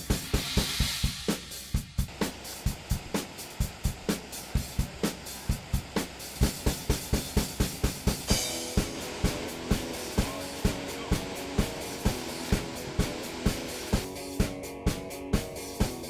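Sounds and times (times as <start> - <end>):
cymbal crash: 0.0 - 14.6
drum kit beat: 0.0 - 16.0
held chords: 1.3 - 16.0.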